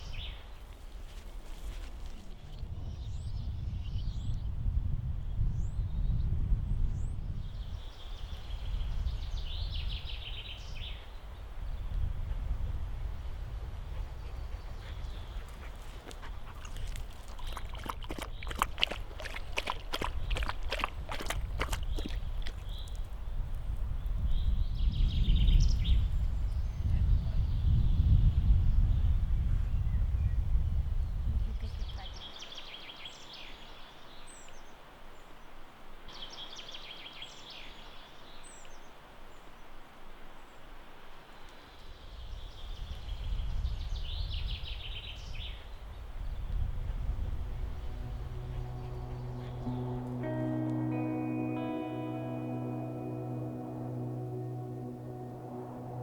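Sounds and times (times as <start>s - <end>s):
forest background rush: 0.0s - 4.3s, 13.2s - 24.8s, 31.7s - 56.0s
wind buffeting microphone: 0.0s - 32.1s, 42.1s - 50.3s
footsteps on trail: 0.6s - 2.4s, 15.0s - 23.2s
songbird singing: 14.1s - 28.3s, 41.4s - 56.0s.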